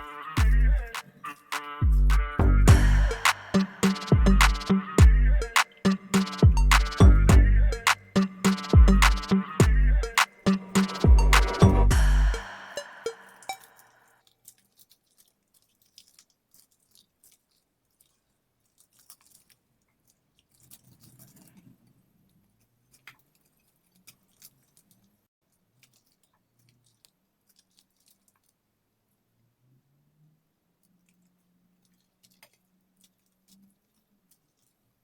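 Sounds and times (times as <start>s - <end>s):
faint small clicks and crackles: 14.2s - 35.0s.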